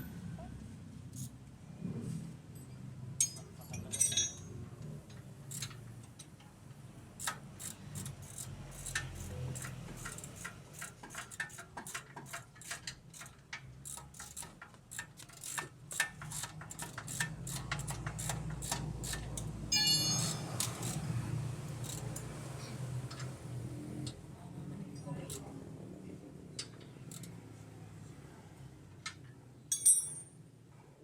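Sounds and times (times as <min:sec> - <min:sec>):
ringing metal clink: 0:02.6 - 0:04.5, 0:19.7 - 0:20.9, 0:29.7 - 0:30.4
ratchet wrench clicking: 0:05.5 - 0:06.4, 0:07.2 - 0:19.5, 0:20.2 - 0:22.4, 0:26.6 - 0:27.4.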